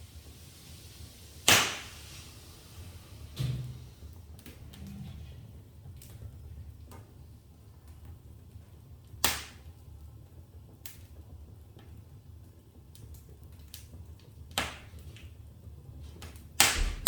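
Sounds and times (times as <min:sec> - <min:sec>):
low rumble of fire: 0:00.0 - 0:17.0
wood fire crackling and popping: 0:00.0 - 0:17.0.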